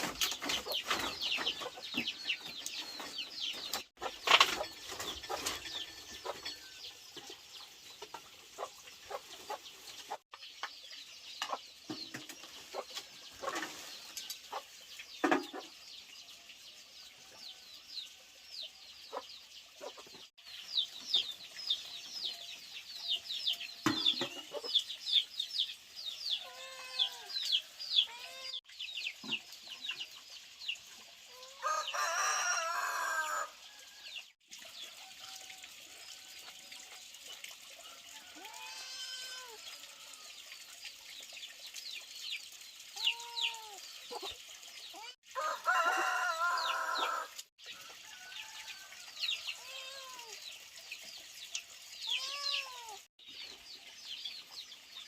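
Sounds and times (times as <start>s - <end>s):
chickens clucking: 0.0s - 10.8s, 11.4s - 15.8s, 19.1s - 20.3s, 23.8s - 24.9s
rooster crowing: 31.4s - 33.6s, 45.3s - 47.4s.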